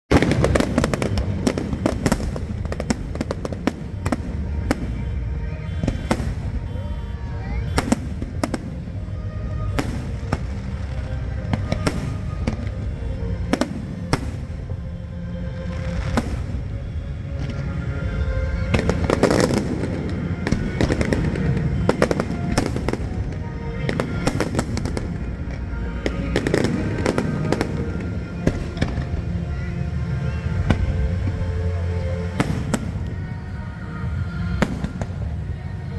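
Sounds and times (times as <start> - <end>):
fireworks crackling pops: 0.1 - 5.2, 5.8 - 8.9, 9.7 - 14.9, 15.8 - 17.7, 18.7 - 29.7, 32.3 - 33.2
music playing: 0.1 - 35.9.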